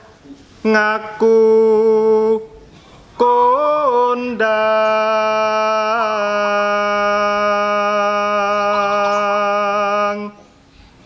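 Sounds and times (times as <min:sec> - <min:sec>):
man chanting: 0:00.6 - 0:10.5.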